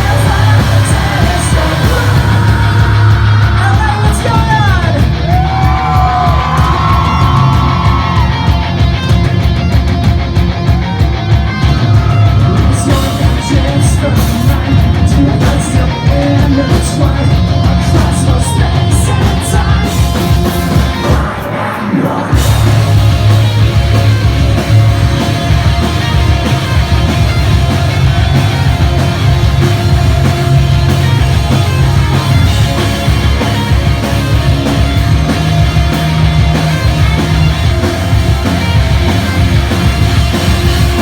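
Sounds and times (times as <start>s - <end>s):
person singing and yelling: 0.0s - 8.7s, 11.9s - 22.9s
bass guitar: 0.0s - 41.0s
distorted guitars: 0.0s - 41.0s
drums: 0.0s - 41.0s.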